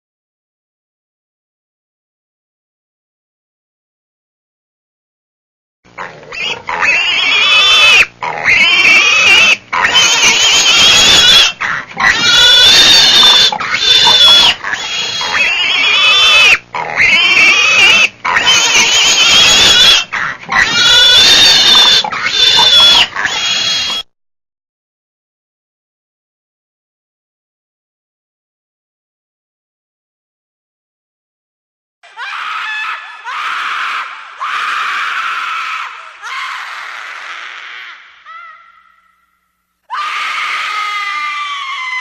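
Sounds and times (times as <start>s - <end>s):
animal squealing high-pitched: 6.0s - 24.1s, 39.9s - 42.0s.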